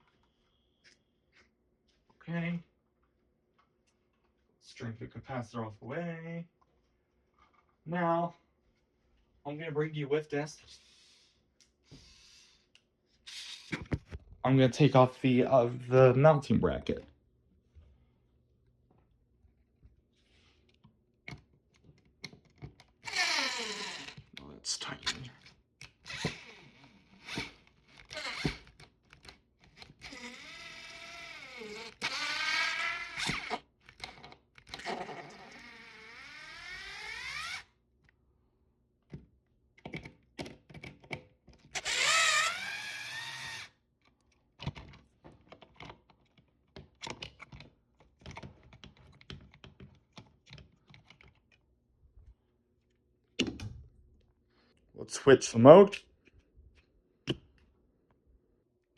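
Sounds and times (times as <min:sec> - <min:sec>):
power tool motor whining: 0:30.0 - 0:33.6, 0:34.8 - 0:37.7, 0:41.8 - 0:43.7.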